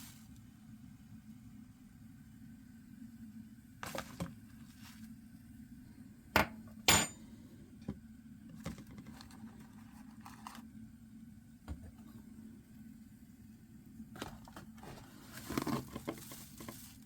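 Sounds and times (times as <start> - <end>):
low steady hum: 0.0 - 17.0
dishes knocking and clinking: 6.4 - 7.2.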